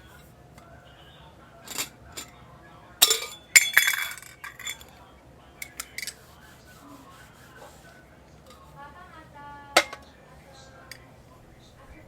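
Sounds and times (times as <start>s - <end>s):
metal cookware clinking: 1.6s - 2.3s, 3.0s - 5.0s, 9.8s - 10.1s.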